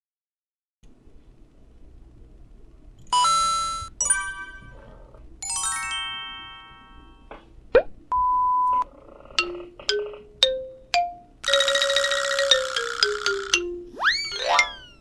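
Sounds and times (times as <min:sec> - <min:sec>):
censor beep: 0:08.1 - 0:08.8
plucked mallet-like notes: 0:09.4 - 0:15.0
whistle-like sweep: 0:13.9 - 0:15.0.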